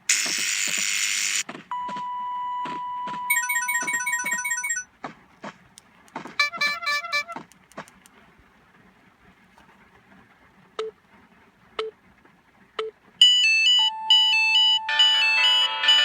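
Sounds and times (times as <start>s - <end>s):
short beeps: 1.7s - 4.8s, 6.4s - 7.4s
electronic chime melody: 2.9s - 4.8s.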